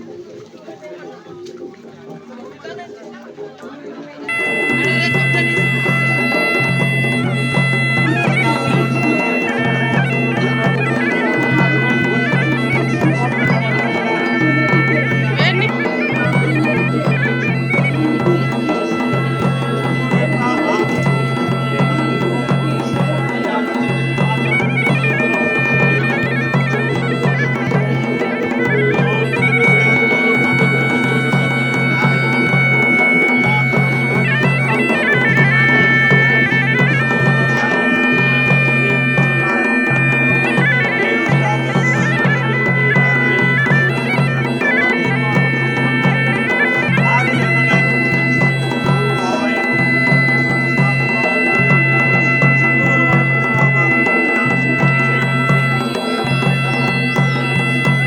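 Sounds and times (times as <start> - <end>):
drumming: 0.0 - 58.0
reed pipe melody: 0.0 - 58.0
bagpipe playing: 4.2 - 58.0.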